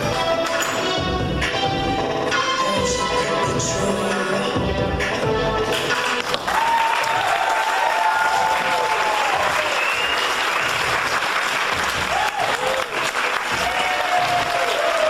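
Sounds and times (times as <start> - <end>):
audience applauding: 6.2 - 15.0.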